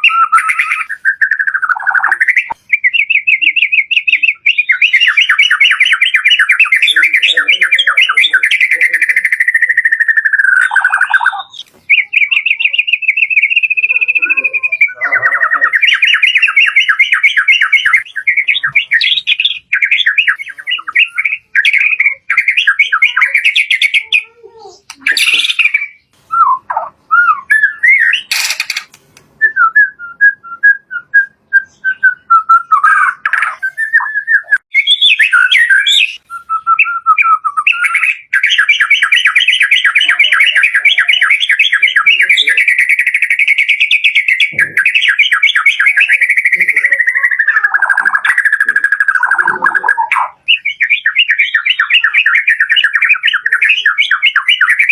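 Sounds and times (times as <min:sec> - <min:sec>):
songbird singing whistles and trills: 0:00.0 - 0:54.9
sharp clicks: 0:28.3 - 0:29.3.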